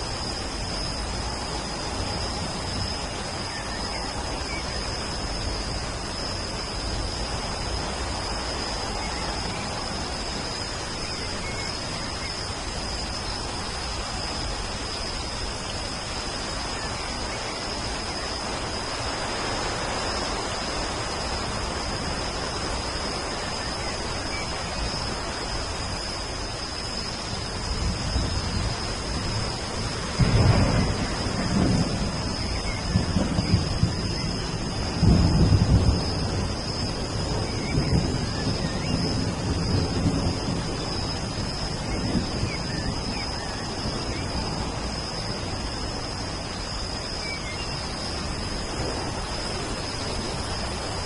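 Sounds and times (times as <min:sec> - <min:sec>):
steady rain falling: 0:00.0 - 0:51.0
thunder rumbling: 0:27.4 - 0:46.6, 0:47.2 - 0:51.0.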